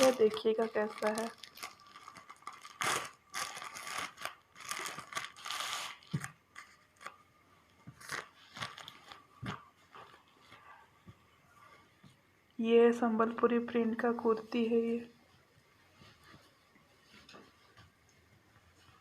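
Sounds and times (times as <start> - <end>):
packaging tearing and crinkling: 0.0 - 7.2, 8.0 - 9.6.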